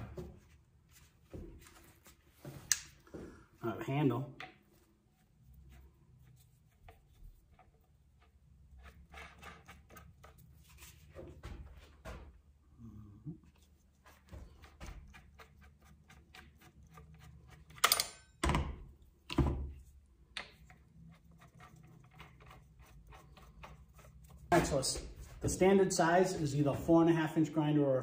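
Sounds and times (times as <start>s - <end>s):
tool parts clicking and rattling: 17.6s - 18.4s.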